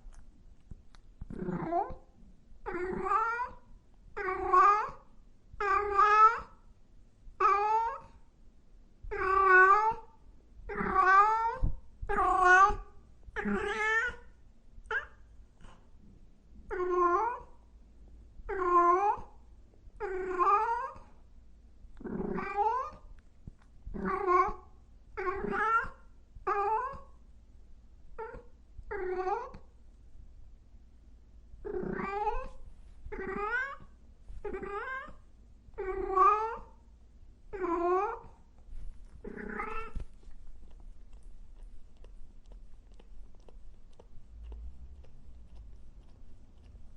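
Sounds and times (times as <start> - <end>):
cat meowing: 5.6 - 6.6, 7.4 - 8.1, 9.1 - 10.1, 10.7 - 14.3, 20.0 - 21.0, 22.2 - 23.0, 25.2 - 27.1, 31.7 - 35.2, 35.8 - 36.8, 39.2 - 40.1.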